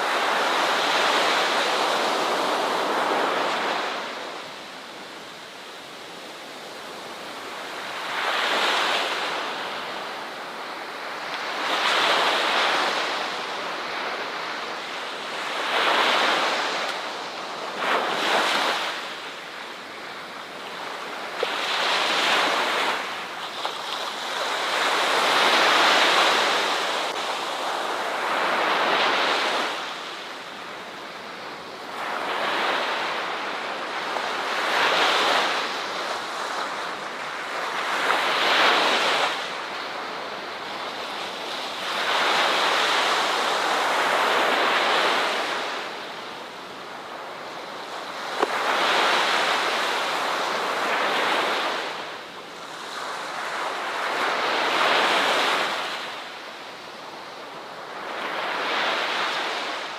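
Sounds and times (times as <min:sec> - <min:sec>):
ocean waves breaking on beach: 0:00.0 - 0:59.9.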